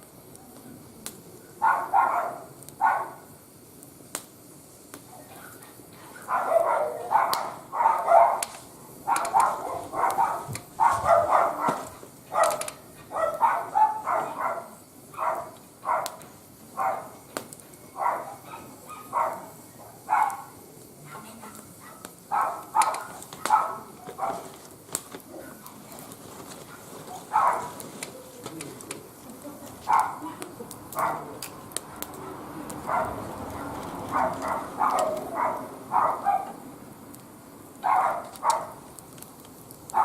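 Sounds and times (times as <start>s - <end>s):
dog barking: 1.6s - 3.2s, 5.1s - 16.2s, 16.8s - 17.2s, 18.0s - 24.5s, 26.7s - 27.8s, 29.9s - 30.3s, 31.0s - 36.6s, 37.8s - 38.8s.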